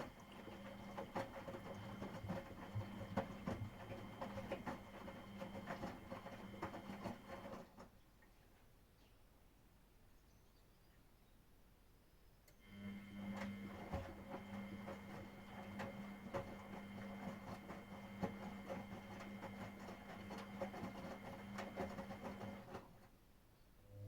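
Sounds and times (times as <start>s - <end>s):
washing machine motor hum: 0.0s - 7.8s, 12.6s - 23.1s.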